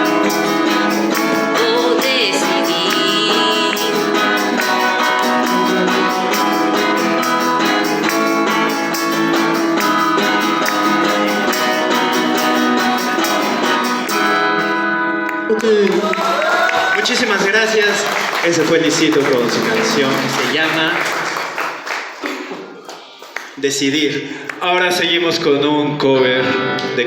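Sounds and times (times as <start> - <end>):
percussion strokes: 0.0 - 14.9
strummed acoustic guitars: 0.0 - 16.2, 17.2 - 23.3, 24.2 - 27.0.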